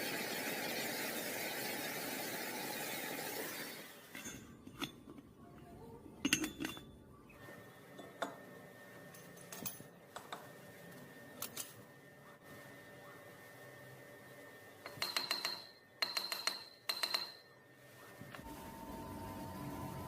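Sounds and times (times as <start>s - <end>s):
metallic clinks and taps: 4.1s - 5.3s, 6.2s - 6.9s, 9.1s - 10.4s, 14.8s - 17.5s
lathe running: 18.4s - 20.0s.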